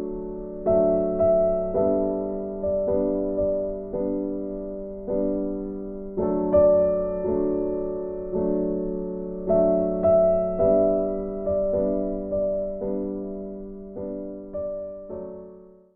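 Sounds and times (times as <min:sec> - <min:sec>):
soft piano chords: 0:00.0 - 0:15.9.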